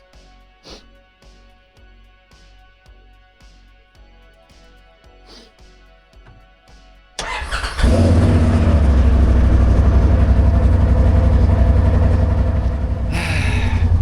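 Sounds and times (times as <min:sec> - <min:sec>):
quiet background music: 0:00.0 - 0:08.8
vehicle engine starting and idling: 0:07.2 - 0:14.0.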